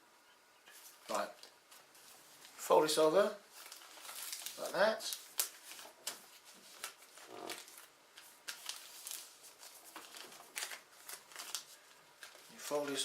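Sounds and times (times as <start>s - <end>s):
paper rustling and crackling: 0.7s - 13.0s.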